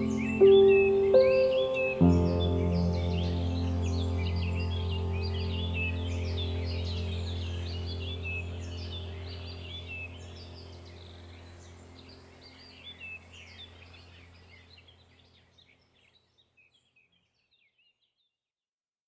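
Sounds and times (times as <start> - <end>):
low steady drone: 0.0 - 14.8
small birds chirping: 0.0 - 18.4.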